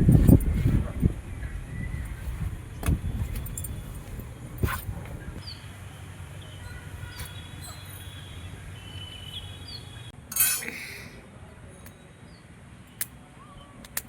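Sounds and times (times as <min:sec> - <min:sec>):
steady low hum: 0:00.0 - 0:10.1
small birds chirping: 0:00.1 - 0:10.2.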